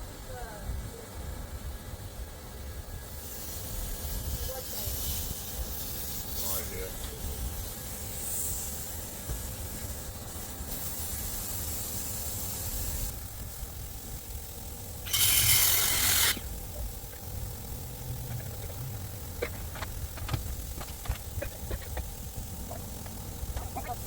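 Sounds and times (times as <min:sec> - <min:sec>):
loud hiss: 0:00.7 - 0:16.9
steady low rumble: 0:16.4 - 0:24.0.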